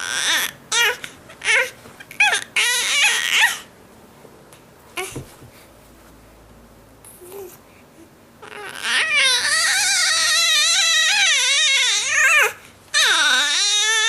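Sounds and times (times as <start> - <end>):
cat yowling: 8.4 - 14.0.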